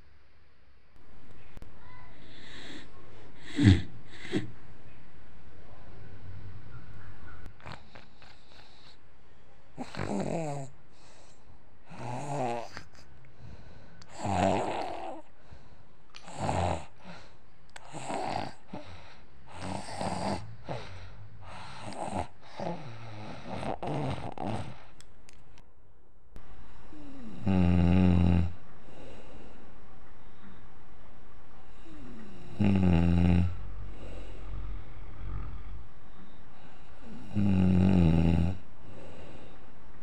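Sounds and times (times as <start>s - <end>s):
person snoring: 2.2s - 4.5s, 9.8s - 11.3s, 11.9s - 13.0s, 14.0s - 15.3s, 16.2s - 25.0s, 26.7s - 29.5s, 31.7s - 39.6s.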